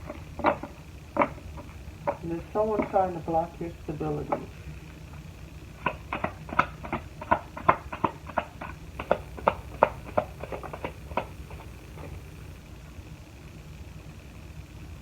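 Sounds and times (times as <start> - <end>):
playing cards clicking and slapping: 5.8 - 12.6.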